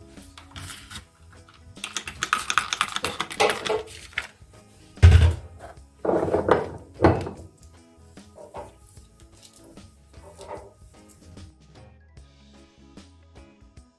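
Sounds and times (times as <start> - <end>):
background music: 0.0 - 13.9
containers clicking and clattering: 0.3 - 4.4, 5.0 - 7.5, 8.4 - 8.8, 10.2 - 10.7
heavy thump: 5.0 - 5.7.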